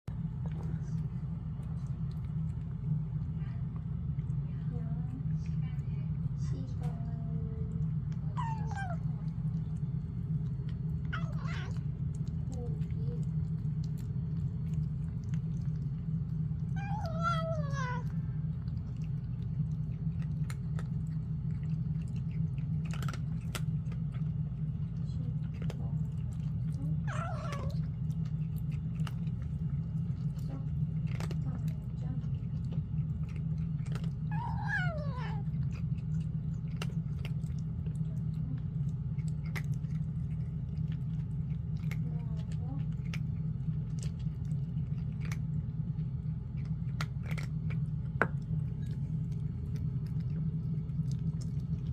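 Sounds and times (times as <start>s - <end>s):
steady low hum: 0.0s - 51.9s
chewing: 0.1s - 51.9s
cat meowing: 8.3s - 9.1s, 11.1s - 11.9s, 16.7s - 18.1s, 27.0s - 27.9s, 34.3s - 35.5s.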